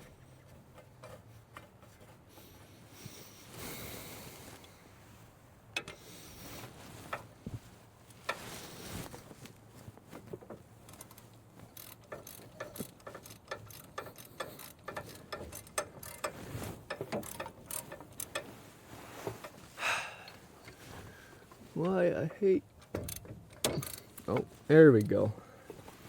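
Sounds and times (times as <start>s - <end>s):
ratchet wrench clicking: 10.9s - 18.4s.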